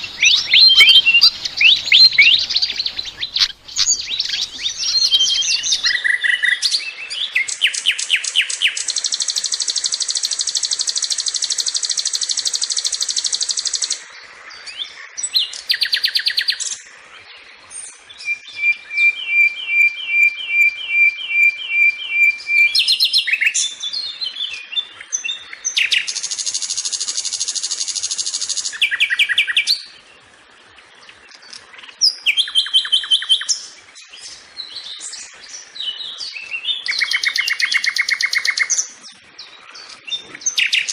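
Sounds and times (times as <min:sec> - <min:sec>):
bird singing trills: 0:00.0 - 0:14.0, 0:31.0 - 0:40.9.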